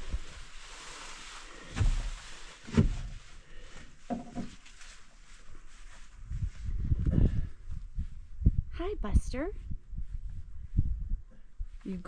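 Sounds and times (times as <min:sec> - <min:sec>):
dull knocks and thumps: 0:01.7 - 0:03.3, 0:04.0 - 0:04.6.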